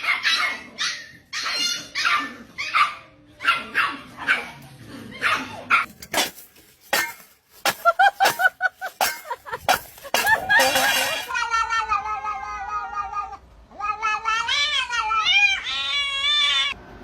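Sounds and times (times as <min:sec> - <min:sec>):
dog barking and yipping: 0:00.0 - 0:04.6, 0:05.2 - 0:11.3.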